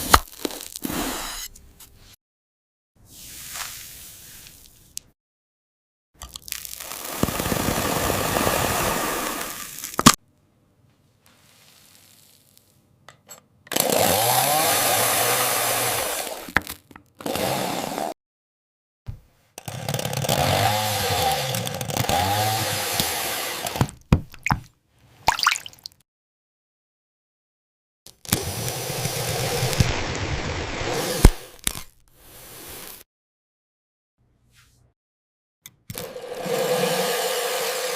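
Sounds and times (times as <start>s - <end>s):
chainsaw cutting: 6.8s - 10.2s, 13.7s - 16.5s, 17.2s - 18.1s, 19.6s - 23.8s, 28.3s - 31.6s, 35.9s - 37.9s.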